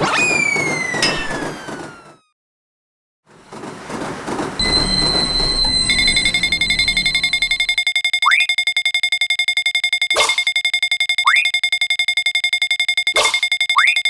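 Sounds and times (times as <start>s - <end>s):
rising whistle sweep: 4.6s - 7.8s
railroad crossing alarm beeping: 4.6s - 14.0s.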